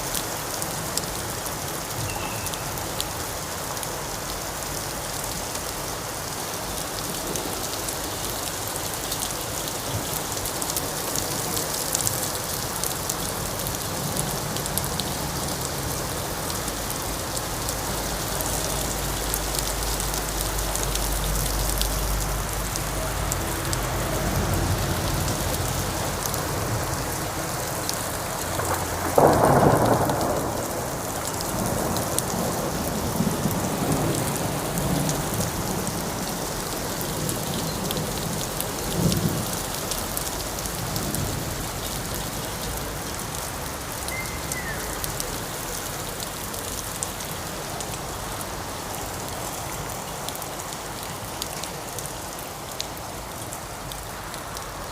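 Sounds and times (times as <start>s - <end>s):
steady rain falling: 0.0s - 54.9s
thunderclap rumbling: 28.4s - 35.6s.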